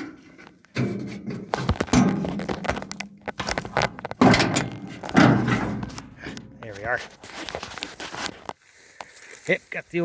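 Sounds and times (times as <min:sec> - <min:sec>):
truck hood clunks and rattles: 0:00.0 - 0:06.6.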